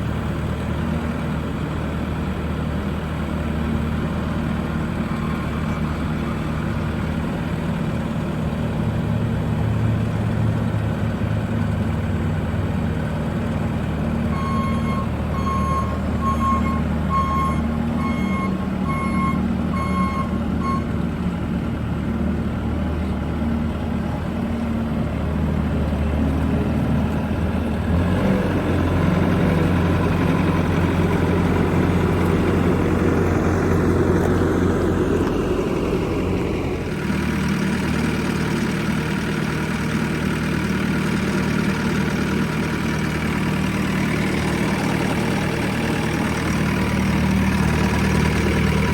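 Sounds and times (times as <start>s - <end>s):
diesel engine running: 0.0s - 48.9s
reversing alarm beeping: 14.3s - 20.9s.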